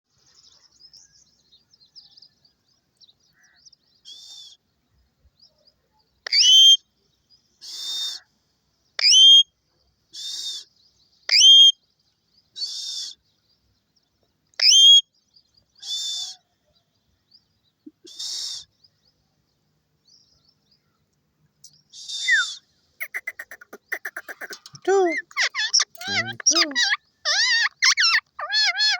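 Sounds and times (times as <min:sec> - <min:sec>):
parrot hissing calls: 0:07.6 - 0:08.2, 0:18.1 - 0:18.7, 0:22.0 - 0:24.5
parrot whistling: 0:22.1 - 0:23.5.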